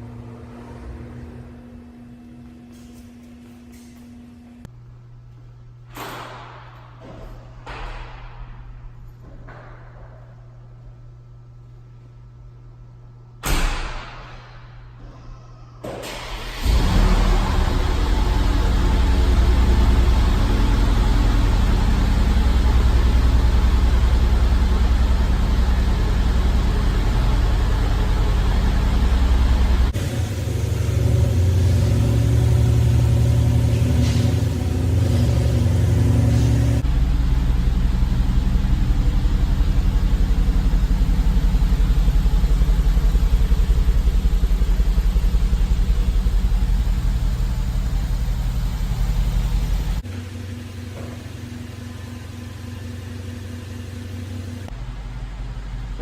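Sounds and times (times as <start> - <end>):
different engine sound: 0.0 - 5.5, 16.2 - 56.0
car engine rumbling: 14.7 - 56.0.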